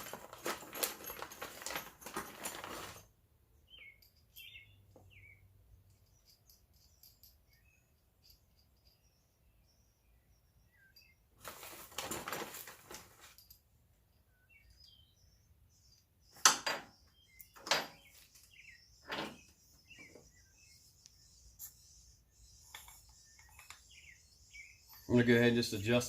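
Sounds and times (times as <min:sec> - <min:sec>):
tools rattling: 0:00.0 - 0:03.1, 0:11.4 - 0:13.6, 0:16.4 - 0:20.4, 0:22.6 - 0:26.0
birds chirping: 0:03.6 - 0:11.9, 0:13.1 - 0:26.0.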